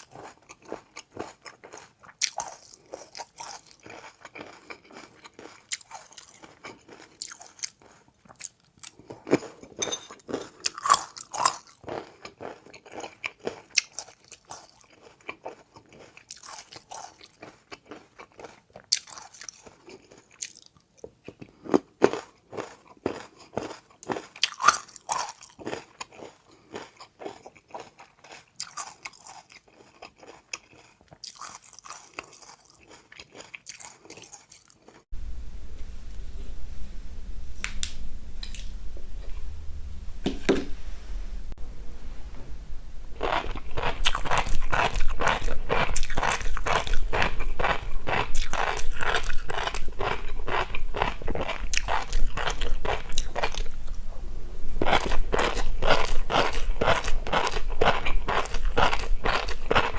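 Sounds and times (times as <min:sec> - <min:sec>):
biting: 0:00.0 - 0:20.7, 0:43.2 - 0:53.8, 0:54.8 - 0:59.9
close chewing of crunchy food: 0:00.0 - 0:35.2, 0:43.1 - 0:54.1, 0:54.8 - 0:59.9.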